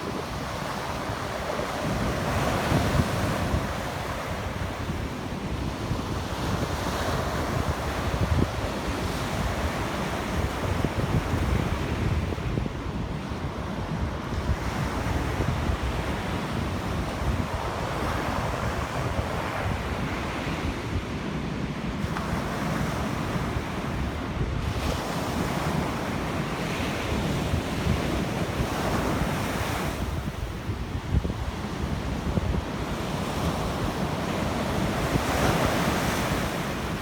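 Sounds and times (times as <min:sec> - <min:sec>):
wind rumbling on microphone: 0:00.0 - 0:37.0
sea waves breaking: 0:22.0 - 0:37.0.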